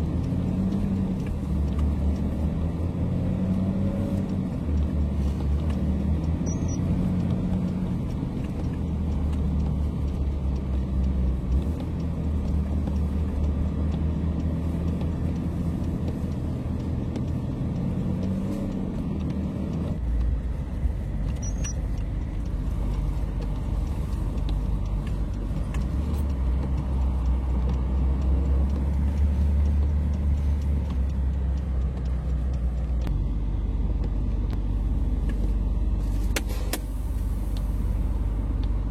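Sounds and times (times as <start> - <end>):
road noise: 0.0 - 38.9
truck engine rumble: 0.0 - 38.9.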